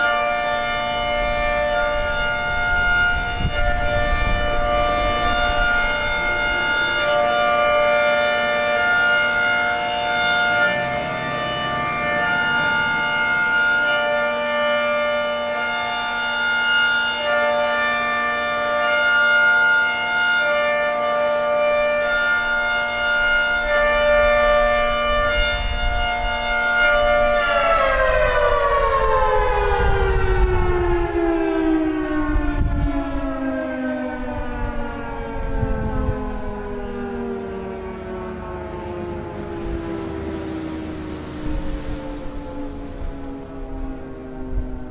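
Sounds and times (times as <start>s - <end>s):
hi-lo warning siren: 0.0s - 44.9s.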